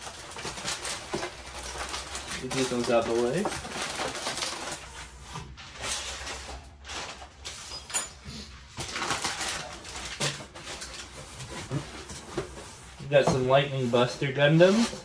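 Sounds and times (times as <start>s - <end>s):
cardboard boxes rustling and sliding: 10.1s - 15.0s.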